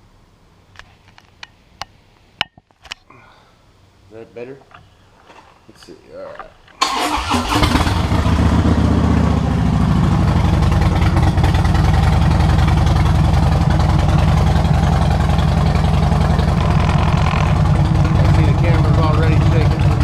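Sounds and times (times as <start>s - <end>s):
motorcycle engine idling: 6.9s - 20.0s.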